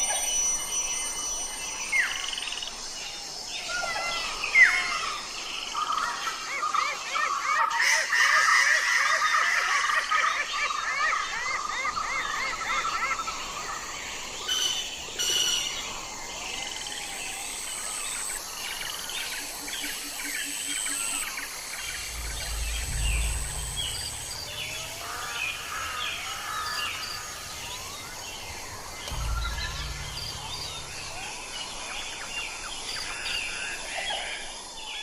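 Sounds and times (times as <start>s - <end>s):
forest birds chirping and trilling: 0.0s - 35.0s
thin high whine: 20.8s - 32.4s
low rumble: 21.7s - 32.8s.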